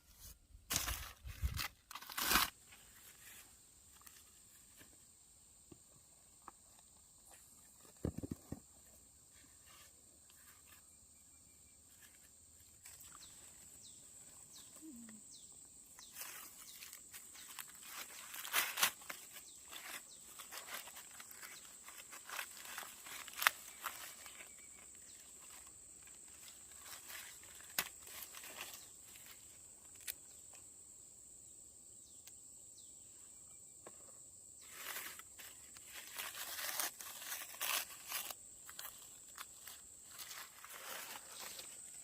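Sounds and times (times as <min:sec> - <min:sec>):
steady high-pitched hiss: 0:00.0 - 0:42.0
plant material rustling: 0:16.0 - 0:30.2, 0:34.6 - 0:42.0.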